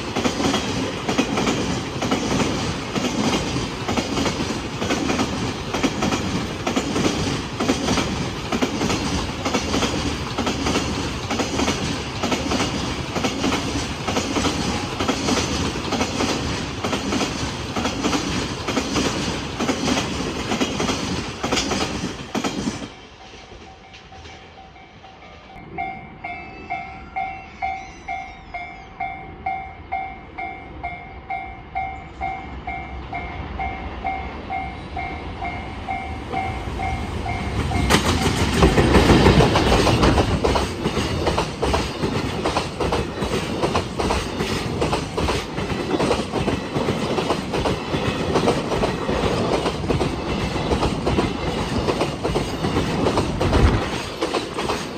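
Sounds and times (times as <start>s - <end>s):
train wheels clattering: 0.0s - 24.6s, 36.2s - 54.9s.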